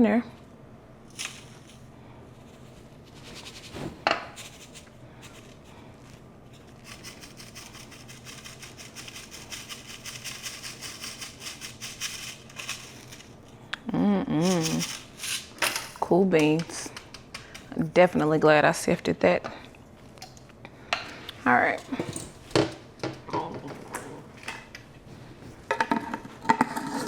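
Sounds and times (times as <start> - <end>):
flour sifter scratching: 1.1 - 13.4, 14.4 - 15.5.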